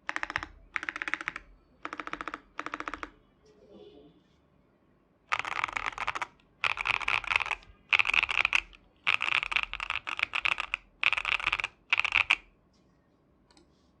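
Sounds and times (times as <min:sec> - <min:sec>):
mechanical keyboard typing: 0:00.0 - 0:03.2, 0:05.3 - 0:12.5.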